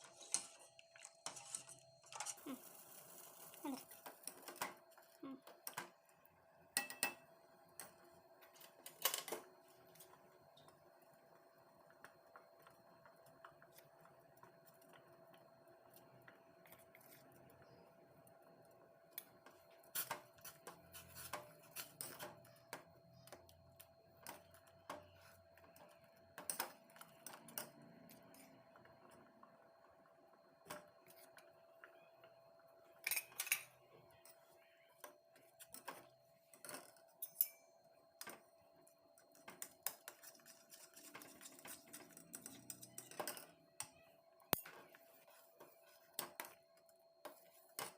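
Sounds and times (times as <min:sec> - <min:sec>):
faint steady hum: 0:00.0 - 0:47.9
metal spoon scraping cooking pot: 0:01.2 - 0:02.7, 0:39.8 - 0:43.2.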